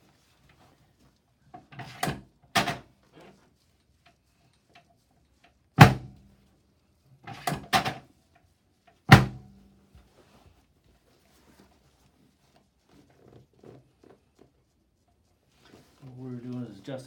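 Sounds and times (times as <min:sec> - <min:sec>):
treatment table thudding: 0:05.8 - 0:06.2, 0:09.1 - 0:09.5.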